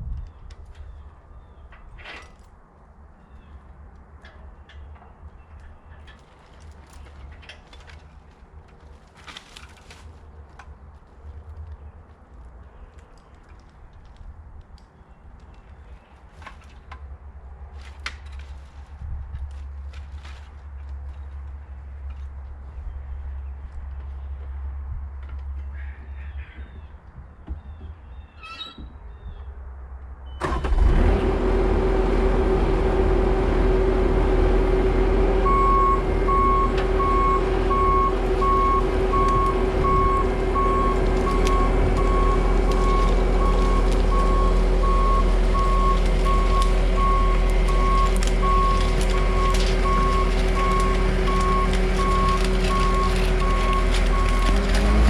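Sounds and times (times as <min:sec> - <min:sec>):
skid steer engine running: 0:30.4 - 0:55.0
reversing alarm beeping: 0:35.4 - 0:54.5.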